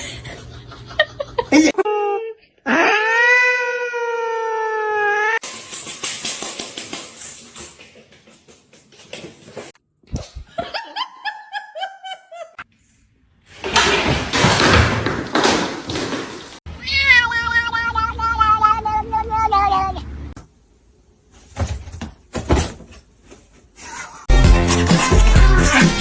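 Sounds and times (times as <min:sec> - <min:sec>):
people laughing: 0:00.0 - 0:02.1, 0:10.5 - 0:12.6
cat meowing: 0:16.7 - 0:20.1.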